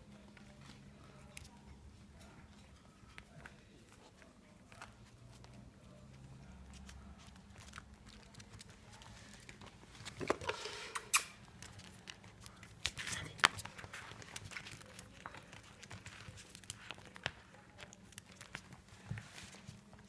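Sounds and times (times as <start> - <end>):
dog claws clicking on hard floor: 6.7 - 20.0.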